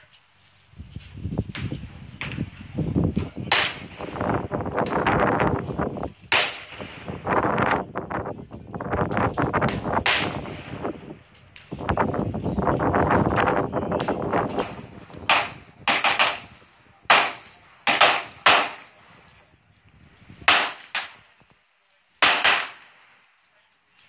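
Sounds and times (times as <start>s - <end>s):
gunshots with echo: 3.4s - 5.4s, 6.2s - 7.4s, 9.6s - 11.0s, 14.0s - 19.2s, 20.4s - 21.2s, 22.2s - 23.0s.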